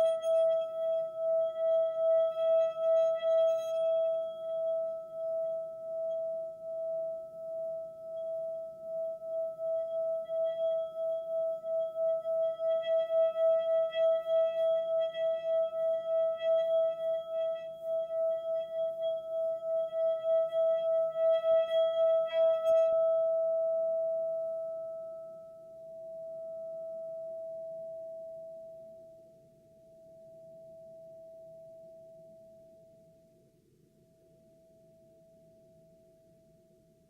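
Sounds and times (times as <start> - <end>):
sustained ringing tone: 0.0 - 29.2.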